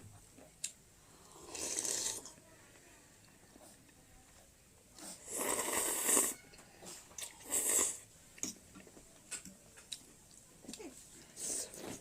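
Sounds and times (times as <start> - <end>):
person slurping: 1.2 - 2.3, 5.0 - 6.4, 7.2 - 8.0.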